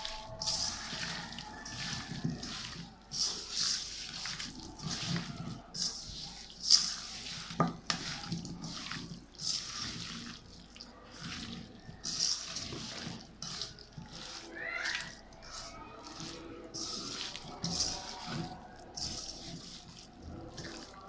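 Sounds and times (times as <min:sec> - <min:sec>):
water splashing in a sink: 0:00.0 - 0:21.0.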